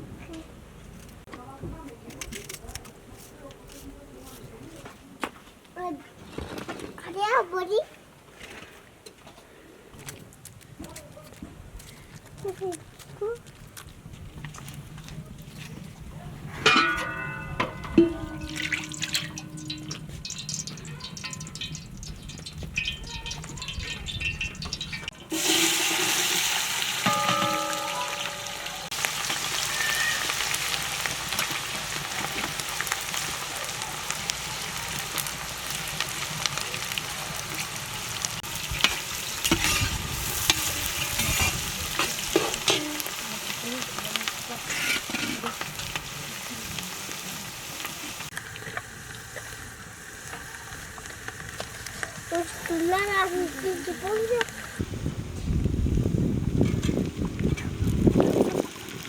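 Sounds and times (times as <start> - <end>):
food sizzling in hot oil: 16.8 - 55.1.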